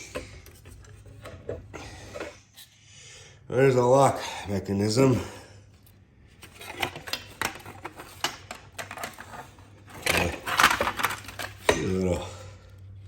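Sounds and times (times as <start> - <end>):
metal parts scraping rattle: 6.4 - 12.2.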